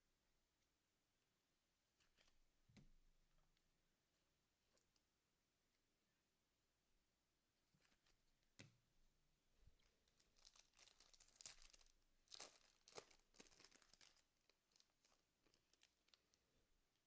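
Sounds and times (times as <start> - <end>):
foil wrapper crinkling and tearing: 10.0 - 16.3.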